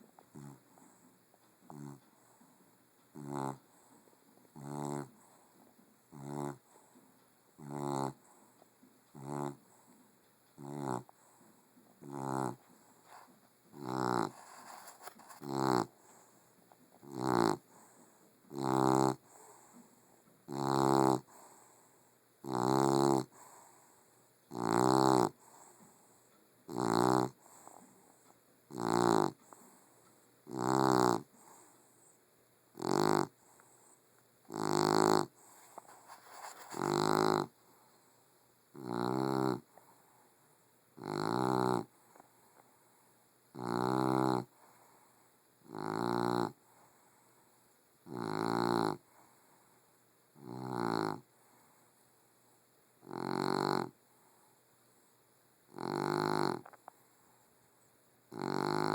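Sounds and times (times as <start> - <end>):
dog snoring loudly: 0.3 - 0.8, 1.6 - 2.1, 3.1 - 3.6, 4.5 - 5.4, 6.1 - 6.8, 7.6 - 8.4, 9.1 - 9.8, 10.6 - 11.2, 12.0 - 16.1, 17.0 - 19.8, 20.5 - 21.6, 22.4 - 23.8, 24.5 - 25.8, 26.7 - 28.0, 28.7 - 29.7, 30.4 - 31.7, 32.7 - 33.6, 34.5 - 37.6, 38.7 - 39.8, 41.0 - 41.9, 43.5 - 44.6, 45.6 - 46.6, 48.0 - 49.2, 50.4 - 51.3, 53.0 - 54.0, 55.7 - 56.8, 58.3 - 58.9.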